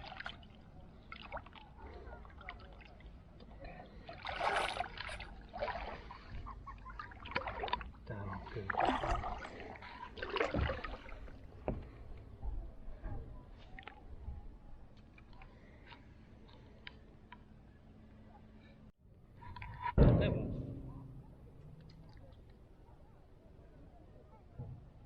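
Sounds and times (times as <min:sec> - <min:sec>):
oar splashing water: 0:00.0 - 0:12.4.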